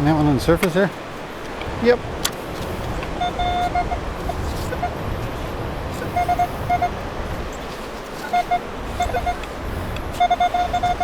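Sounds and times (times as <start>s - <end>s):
steady background rush: 0.0s - 11.0s
metal detector beeping: 3.0s - 5.0s, 6.0s - 7.0s, 8.1s - 11.0s.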